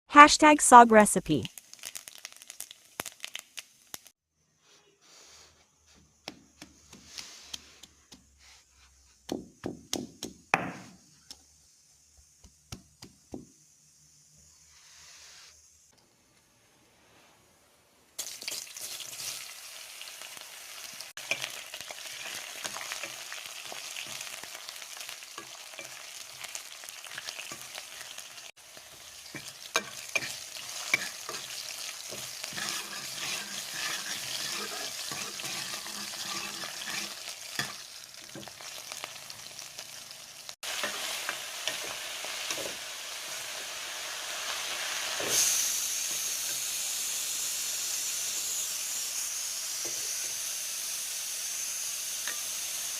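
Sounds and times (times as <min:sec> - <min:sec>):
greens sizzling in hot oil: 0:01.1 - 0:04.2, 0:18.2 - 0:52.9.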